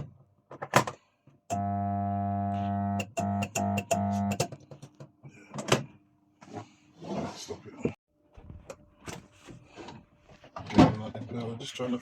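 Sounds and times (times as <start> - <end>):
sump pump motor humming: 1.5 - 4.4.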